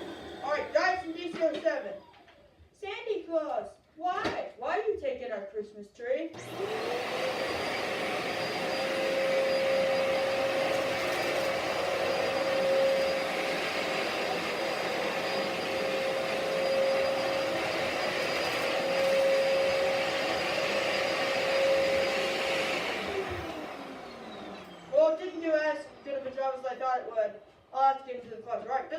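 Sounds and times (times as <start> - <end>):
vacuum cleaner running: 0.0 - 2.4, 6.4 - 27.1.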